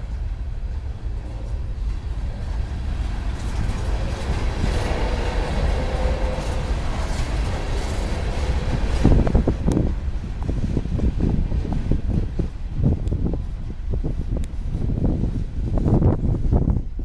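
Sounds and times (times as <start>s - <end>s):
freight train rumbling: 0.0s - 17.0s
rail cars clattering: 0.0s - 17.0s
faint steady squeal: 0.7s - 9.0s.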